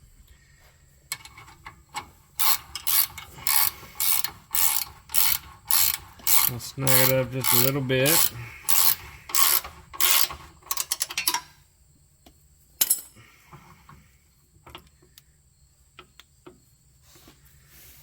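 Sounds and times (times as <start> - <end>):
ratchet wrench ratcheting: 1.1 - 11.5.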